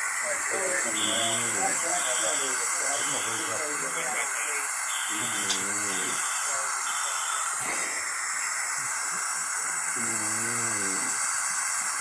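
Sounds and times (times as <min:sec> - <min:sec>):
recording hiss: 0:00.0 - 0:12.0
faint voice speaking: 0:00.2 - 0:06.8.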